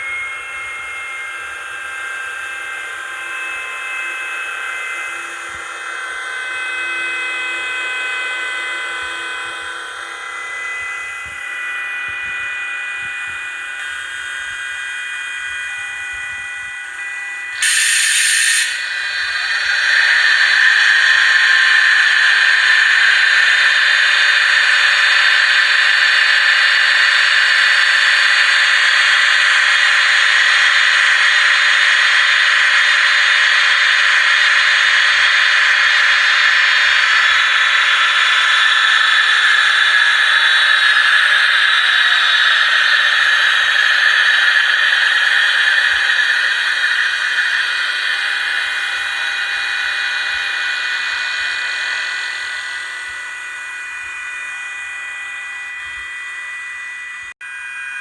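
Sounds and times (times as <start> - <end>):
electric locomotive control whine: 0.0 - 58.0
blower hiss: 17.5 - 24.8.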